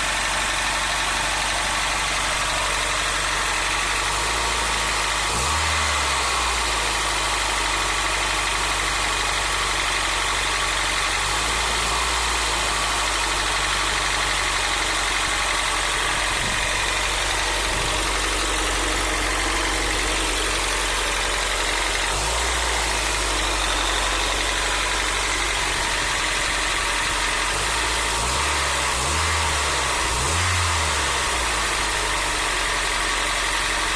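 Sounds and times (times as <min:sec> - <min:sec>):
car engine idling with knock: 0:00.0 - 0:33.9
engine throttle blips: 0:13.0 - 0:33.9.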